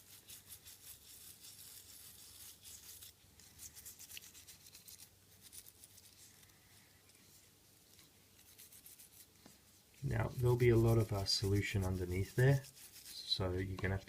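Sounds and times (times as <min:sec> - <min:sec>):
toothbrush scrubbing circuit board: 0:00.0 - 0:06.2, 0:10.0 - 0:13.5.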